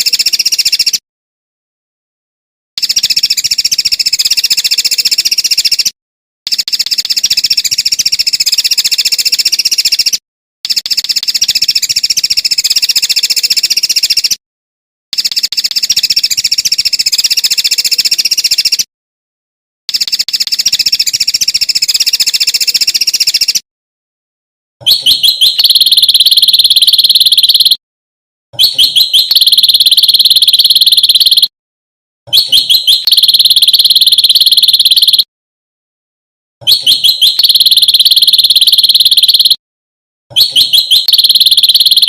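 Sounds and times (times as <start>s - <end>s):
songbird chattering song: 24.9s - 27.8s, 28.6s - 31.4s, 32.3s - 35.2s.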